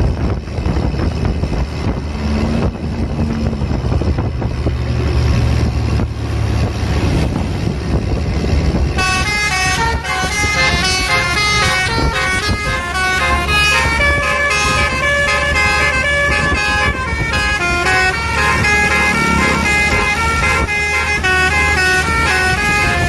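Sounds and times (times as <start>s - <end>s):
bus engine rumbling: 0.0s - 23.0s
multi-tone horn playing a tune: 9.0s - 23.0s.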